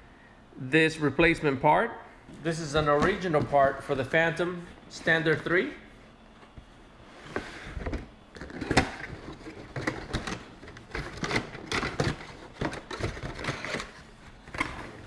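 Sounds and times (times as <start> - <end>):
packaging rustling and clicking: 8.4 - 15.0.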